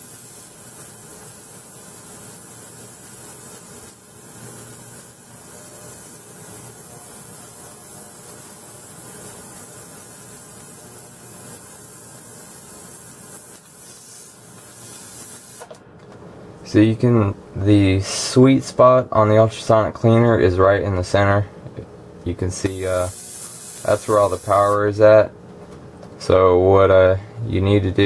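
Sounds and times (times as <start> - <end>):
ultrasonic cleaner hiss: 0.0 - 15.8, 22.6 - 24.9.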